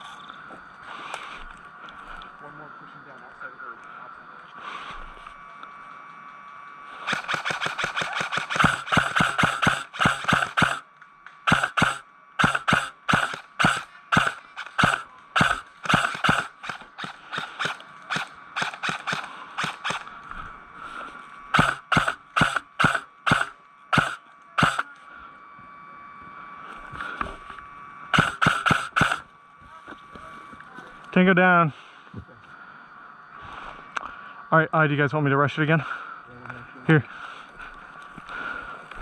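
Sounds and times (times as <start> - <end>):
airsoft gun shots: 7.0 - 10.8, 11.4 - 20.1, 21.5 - 24.9, 28.1 - 29.2.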